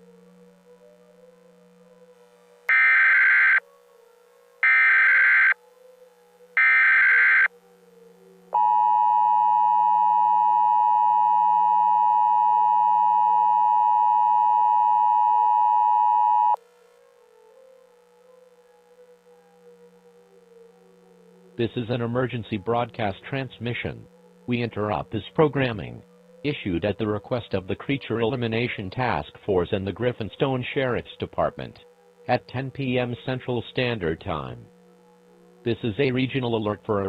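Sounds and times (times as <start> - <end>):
two-tone alert signal: 2.7 - 3.6, 4.6 - 5.6, 6.6 - 7.5
warbling data header bursts: 2.7 - 3.6, 4.6 - 5.6, 6.6 - 7.5.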